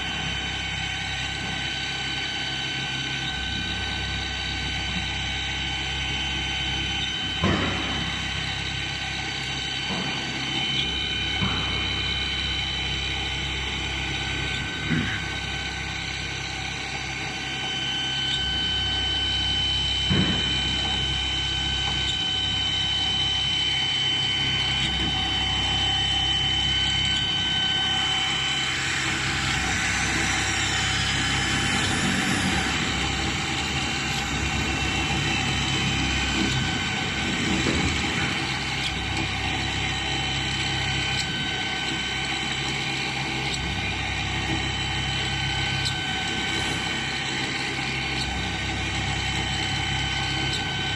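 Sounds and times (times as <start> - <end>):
pipe drilling machine whine: 0.0 - 50.9
harsh metal cutting noise: 23.1 - 50.9.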